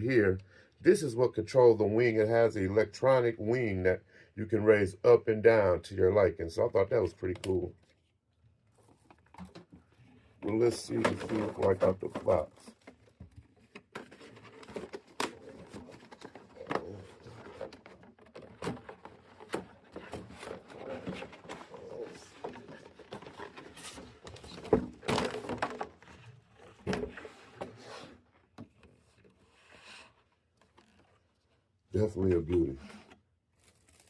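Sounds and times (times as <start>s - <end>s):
cardboard and plastic rustling: 7.3s - 34.0s.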